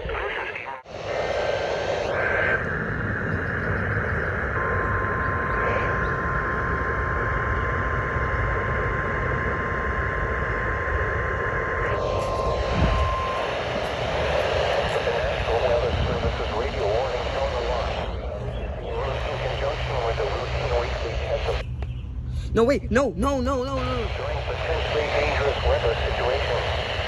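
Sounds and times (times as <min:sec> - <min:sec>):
receiver static hiss: 0:00.0 - 0:21.8, 0:22.5 - 0:27.0
steady alarm beep: 0:03.7 - 0:09.4, 0:11.8 - 0:16.0.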